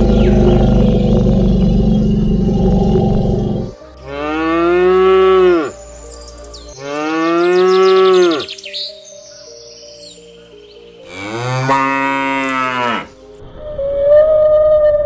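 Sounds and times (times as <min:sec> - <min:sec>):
cow mooing: 0:00.0 - 0:05.7, 0:06.8 - 0:08.5, 0:11.1 - 0:13.2.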